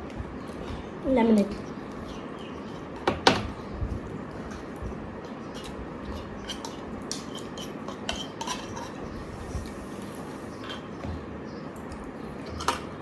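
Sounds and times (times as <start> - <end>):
cutlery clinking on plates: 5.6 - 9.0, 12.4 - 13.0.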